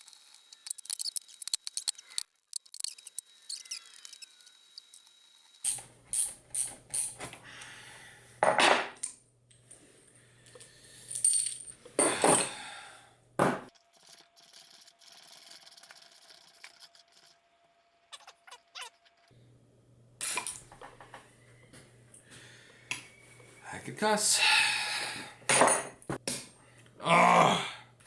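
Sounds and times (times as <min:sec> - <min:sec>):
metal tools clinking on metal parts: 0:10.4 - 0:12.6.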